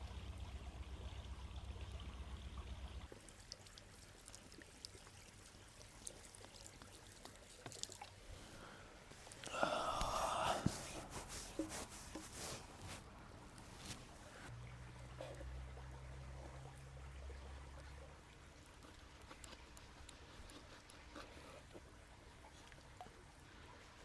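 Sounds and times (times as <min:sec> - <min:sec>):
liquid pouring: 0:03.1 - 0:08.5.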